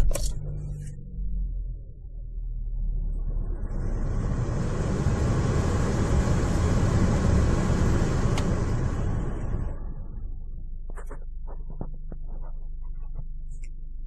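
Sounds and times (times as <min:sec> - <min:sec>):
vehicle tyre and road noise: 0:03.6 - 0:10.2.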